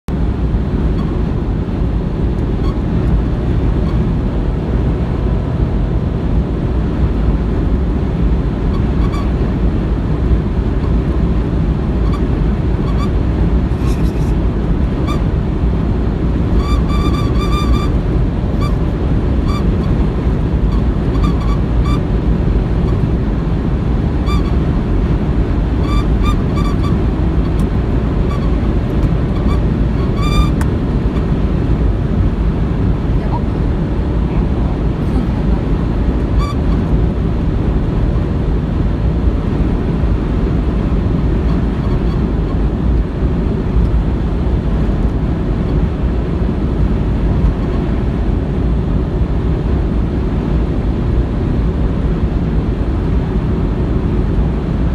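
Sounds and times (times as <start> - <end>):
road and engine noise: 0.0 - 54.9
high-pitched beeping squeaks: 8.8 - 9.4, 12.0 - 14.4, 16.5 - 20.1, 20.7 - 22.1, 24.2 - 24.6, 25.8 - 31.2, 36.3 - 36.9.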